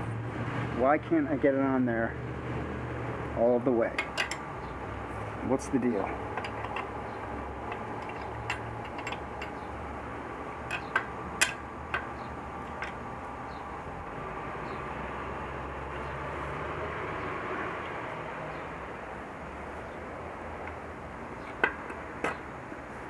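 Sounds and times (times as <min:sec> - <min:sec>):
wrench clinking on metal nut: 0:06.3 - 0:07.0, 0:07.6 - 0:09.6, 0:10.7 - 0:12.1.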